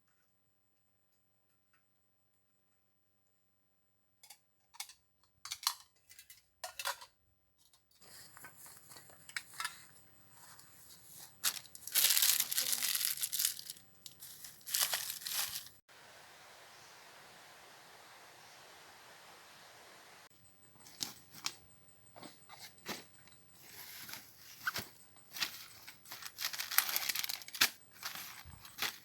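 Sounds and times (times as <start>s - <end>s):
steady even hiss: 8.0s - 21.6s
plastic crinkling and tearing: 11.4s - 15.8s, 23.7s - 29.0s.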